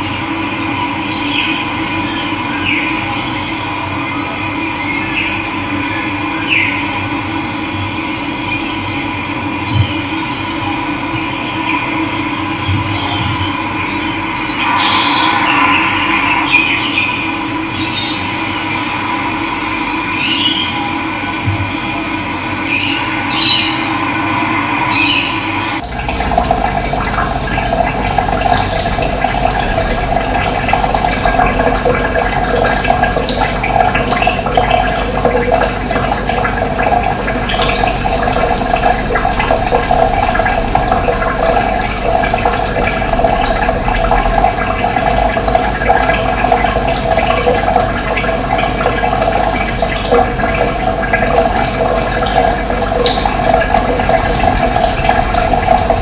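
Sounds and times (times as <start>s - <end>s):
running water: 24.8s - 56.0s.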